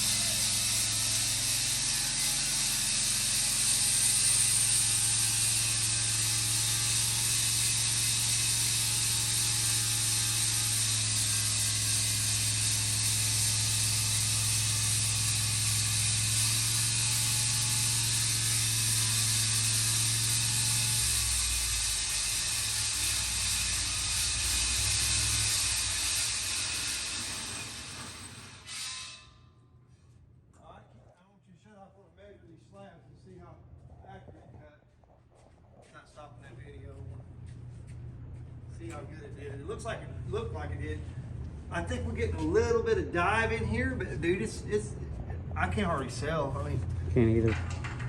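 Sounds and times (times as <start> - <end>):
band saw blade cutting: 0.0 - 29.4.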